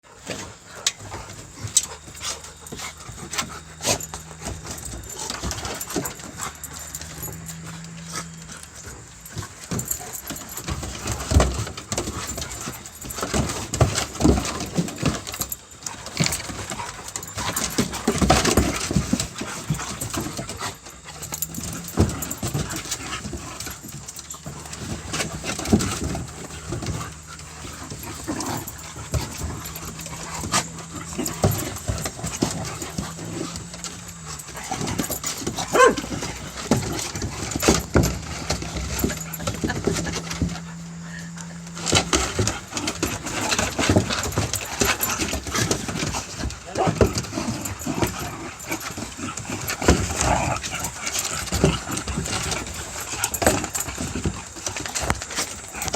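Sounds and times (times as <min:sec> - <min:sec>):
scuffs and knocks of dogs moving: 0:00.0 - 0:55.9
steady low hum: 0:00.1 - 0:55.9
dog call: 0:35.1 - 0:36.1.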